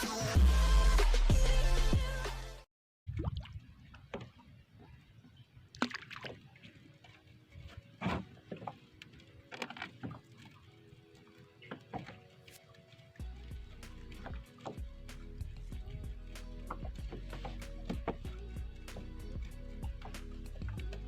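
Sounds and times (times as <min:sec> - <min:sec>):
water lapping against a boat: 0:03.1 - 0:21.0
light knocks and splashes: 0:05.7 - 0:10.8, 0:11.6 - 0:21.0.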